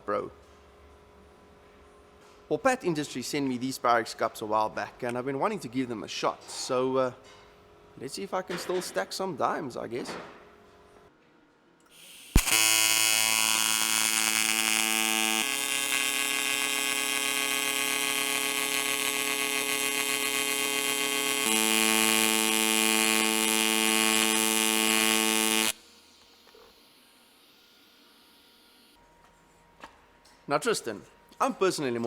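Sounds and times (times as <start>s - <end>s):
welding arc buzzing: 11.9s - 29.0s
welding arc striking crack: 12.0s - 26.8s.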